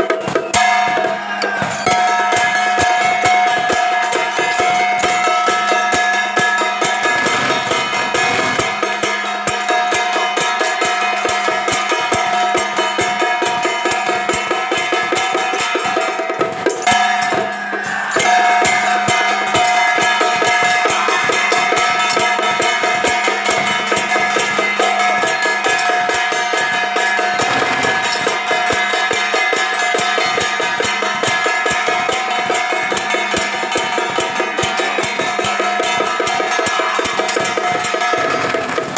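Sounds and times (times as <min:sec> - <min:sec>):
fast drum beating: 0:00.0 - 0:38.9.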